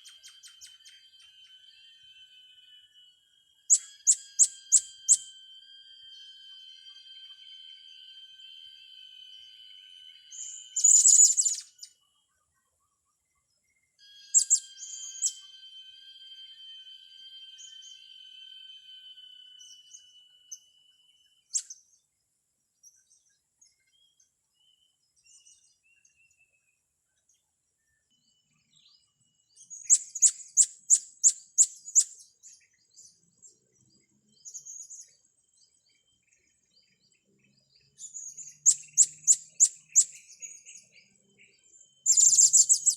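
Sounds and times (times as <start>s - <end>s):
faint high whistle tone: 0.0s - 12.0s, 14.0s - 21.9s, 42.0s - 42.9s
parrots chirping: 10.8s - 11.6s, 42.1s - 42.9s.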